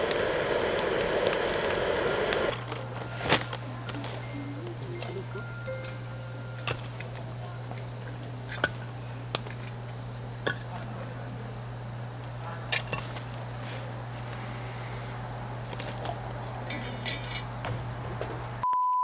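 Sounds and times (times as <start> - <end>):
steady low hum: 0.0 - 18.6
faint high steady tone: 2.5 - 8.6
dishes and utensils clicking: 2.5 - 11.0, 12.6 - 13.3, 15.7 - 18.6.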